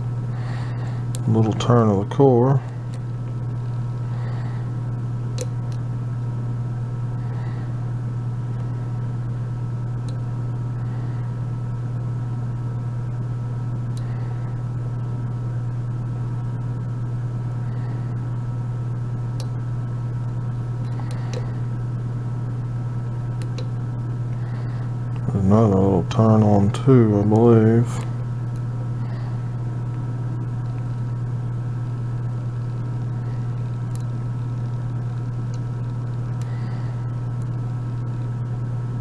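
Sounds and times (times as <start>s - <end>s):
fan humming: 0.0s - 39.0s.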